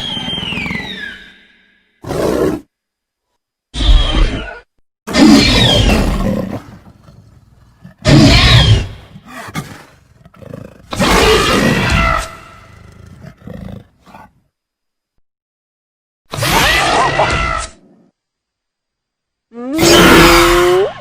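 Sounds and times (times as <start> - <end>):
creature roars: 3.8 - 14.0, 19.7 - 21.0
creature growls: 5.1 - 14.4.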